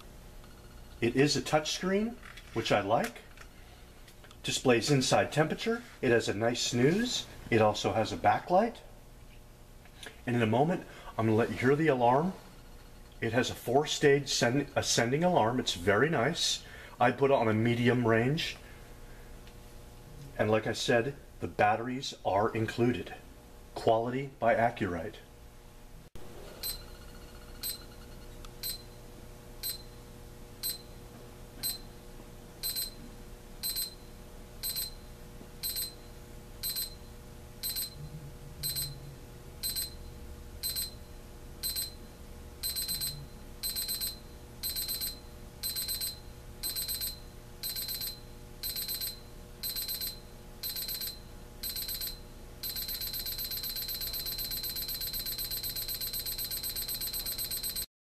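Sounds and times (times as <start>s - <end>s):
alarm clock beeping: 26.6s - 28.9s, 29.6s - 29.9s, 30.6s - 30.9s, 31.6s - 31.9s, 32.6s - 33.0s, 33.6s - 34.0s, 34.6s - 35.0s, 35.6s - 36.0s, 36.6s - 37.0s, 37.6s - 42.0s, 42.6s - 57.9s.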